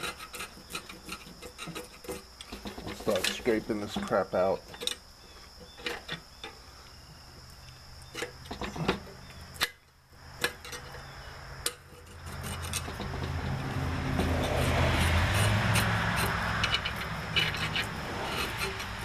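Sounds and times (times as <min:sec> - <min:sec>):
screwdriver scraping metal: 0:00.0 - 0:04.1, 0:11.6 - 0:19.0.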